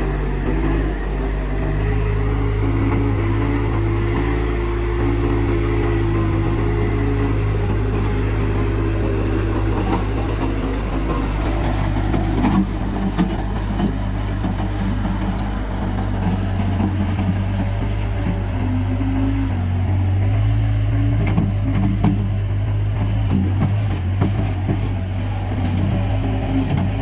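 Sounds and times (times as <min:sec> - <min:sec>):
diesel engine under load: 0:00.0 - 0:27.0.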